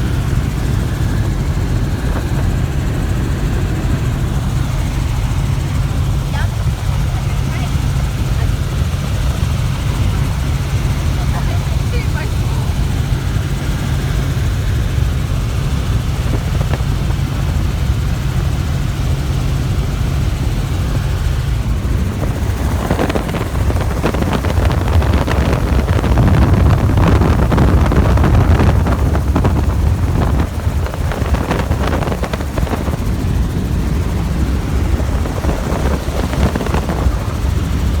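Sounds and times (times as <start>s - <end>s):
helicopter low drone: 0.0s - 38.0s
rough noisy rush: 20.1s - 38.0s.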